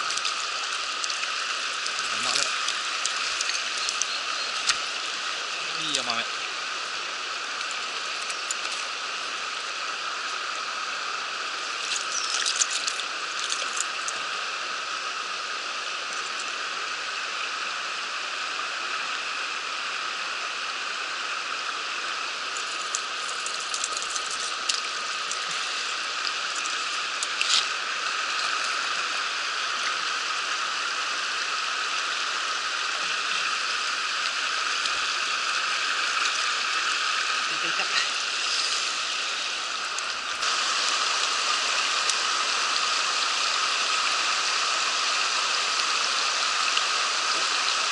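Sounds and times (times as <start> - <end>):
water rushing over rocks: 0.0 - 47.9.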